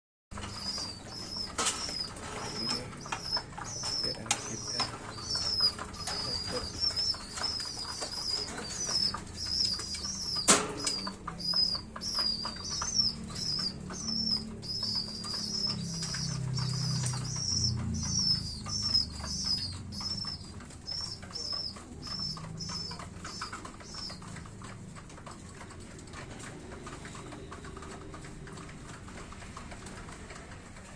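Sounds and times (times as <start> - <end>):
small bird chirping: 0.4 - 24.5
sharp clicks: 0.4 - 30.9.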